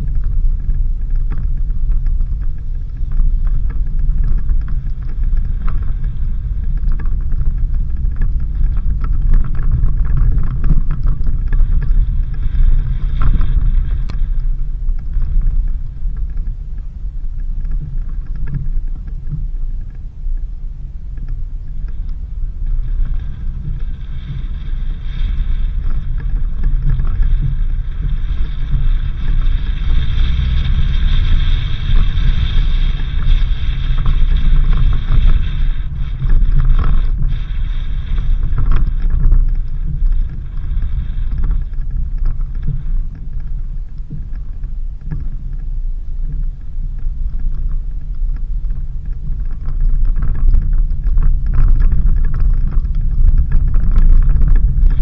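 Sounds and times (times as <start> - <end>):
car engine and road rumble: 0.0 - 55.0
hiss: 22.8 - 43.4.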